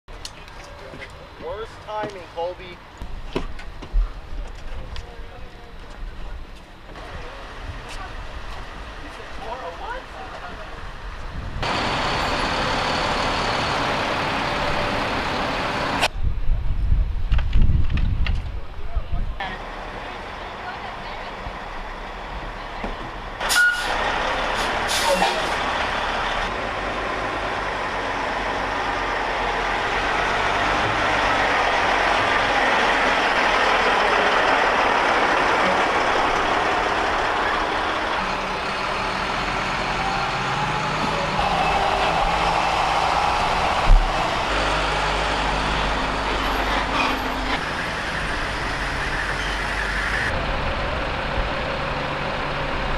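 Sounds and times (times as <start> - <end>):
heavy trucks engine and road noise: 0.1 - 52.9
air-brake hisses: 23.4 - 24.0.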